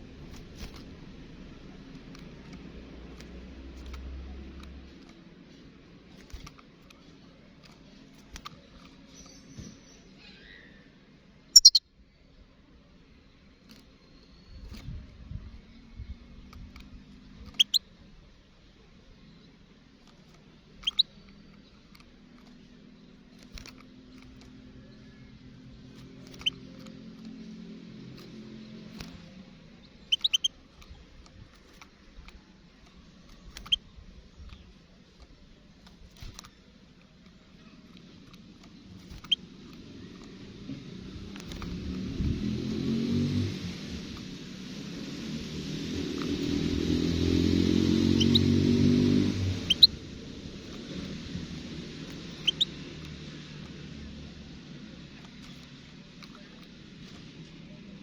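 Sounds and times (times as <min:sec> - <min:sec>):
finch chirping: 0:11.6 - 0:11.8, 0:17.4 - 0:17.8, 0:20.8 - 0:21.1, 0:26.0 - 0:27.0, 0:29.8 - 0:30.6, 0:38.7 - 0:39.5, 0:46.2 - 0:53.1
goldfinch calling: 0:11.6 - 0:11.8, 0:17.5 - 0:17.8, 0:20.8 - 0:21.0, 0:30.0 - 0:30.5, 0:48.0 - 0:50.0, 0:52.1 - 0:52.8.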